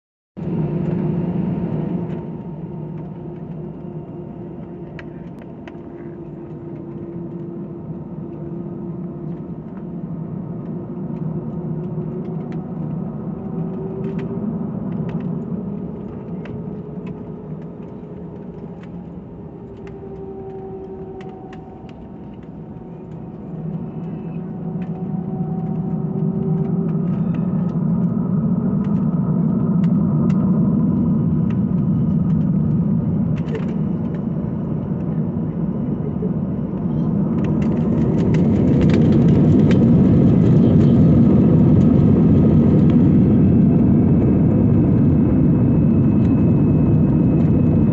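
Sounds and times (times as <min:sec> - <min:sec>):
jet engines and cabin hum: 0:00.4 - 0:47.9.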